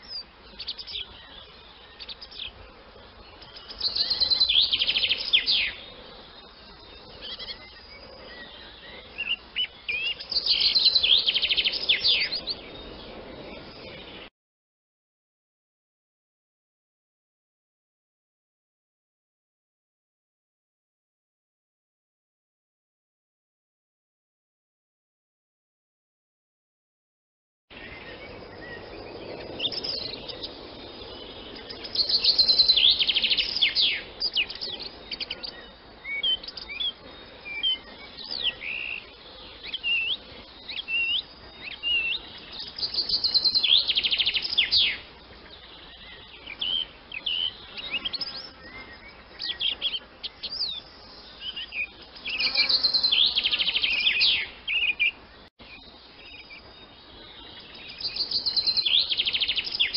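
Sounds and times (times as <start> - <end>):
swallows twittering: 0.0 - 14.3, 27.8 - 59.9.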